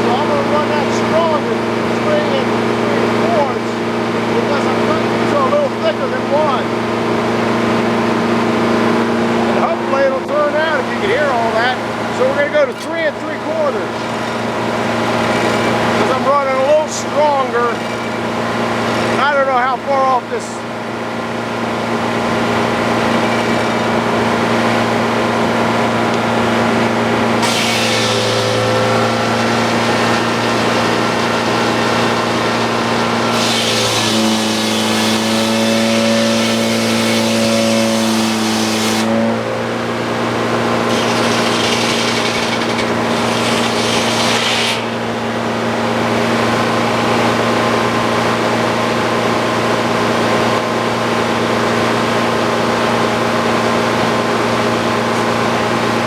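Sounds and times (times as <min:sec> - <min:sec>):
sawmill engine humming: 0:00.0 - 0:56.0
saw blade cutting log: 0:26.1 - 0:39.5, 0:40.7 - 0:46.7.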